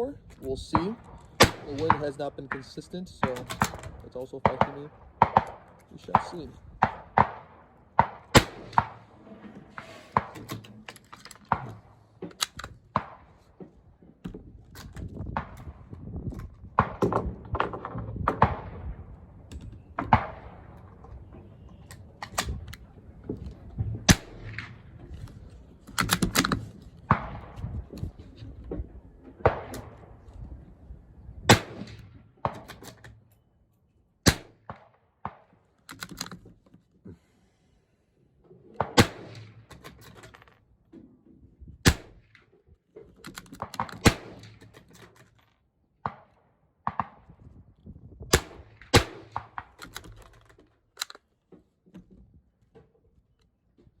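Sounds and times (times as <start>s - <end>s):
pistol shots cracking: 0.7s - 9.2s, 24.1s - 24.9s, 31.5s - 32.9s, 34.2s - 35.5s, 38.8s - 40.0s, 43.6s - 44.8s, 48.3s - 50.0s
wind rumble on microphone: 13.9s - 32.2s, 41.4s - 42.2s, 47.2s - 48.9s.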